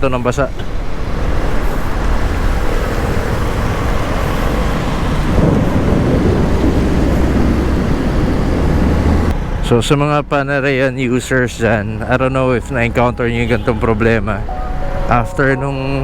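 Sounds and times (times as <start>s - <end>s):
tyres on wet road: 0.0s - 9.9s
wind rumble on microphone: 5.0s - 9.3s.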